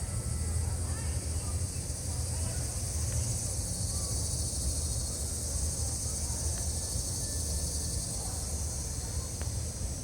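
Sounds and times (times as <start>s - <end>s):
crickets chirping: 0.0s - 10.0s
low steady rumble: 0.0s - 10.0s.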